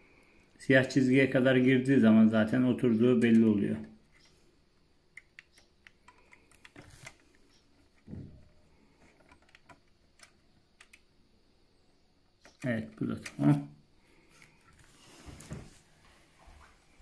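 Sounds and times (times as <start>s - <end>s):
plastic parts clicking: 5.1s - 11.1s, 12.4s - 13.6s.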